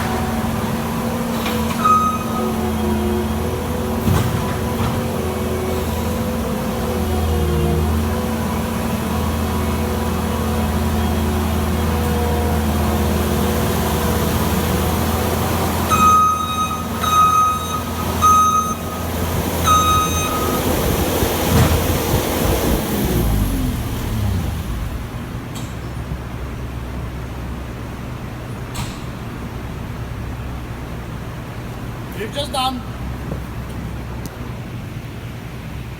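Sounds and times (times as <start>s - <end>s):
diesel engine running: 0.0s - 35.9s
backup alarm beeping: 1.8s - 2.9s, 15.9s - 21.0s.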